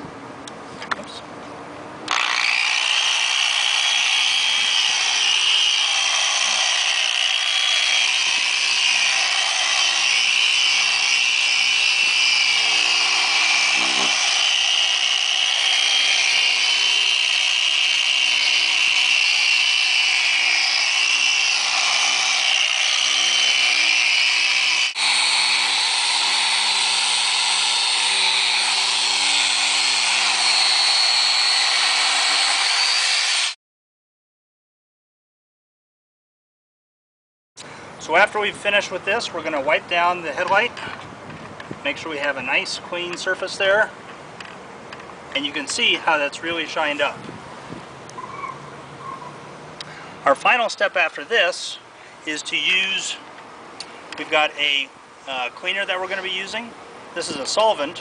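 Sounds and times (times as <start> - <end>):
electric polisher running: 2.1 - 33.6.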